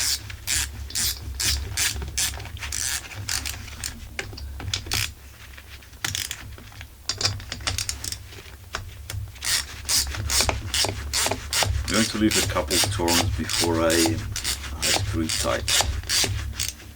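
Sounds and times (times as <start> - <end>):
ratchet wrench clicking: 0.0 - 3.6, 6.0 - 6.4, 9.4 - 16.8.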